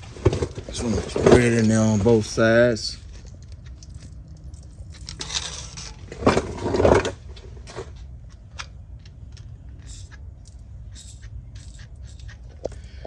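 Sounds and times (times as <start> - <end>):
handling clicks and clinks: 3.0 - 12.9.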